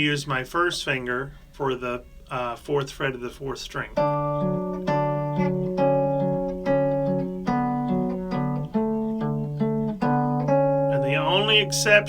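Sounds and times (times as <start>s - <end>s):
fingerpicked guitar: 3.9s - 12.0s.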